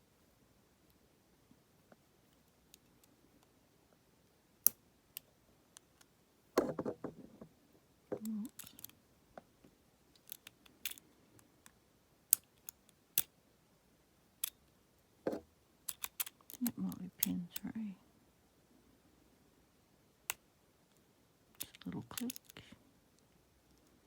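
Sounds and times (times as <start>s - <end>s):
lock pick clicking and scraping: 8.2s - 9.0s, 10.2s - 11.0s, 15.3s - 17.4s, 21.6s - 22.6s.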